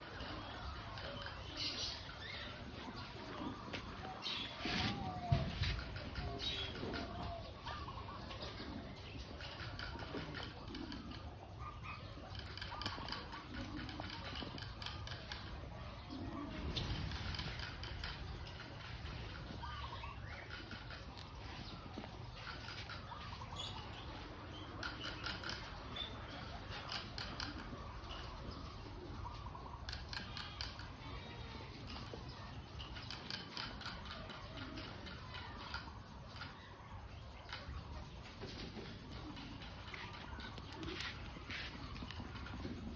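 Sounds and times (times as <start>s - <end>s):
rabbits crunching dry feed: 0.0s - 42.9s.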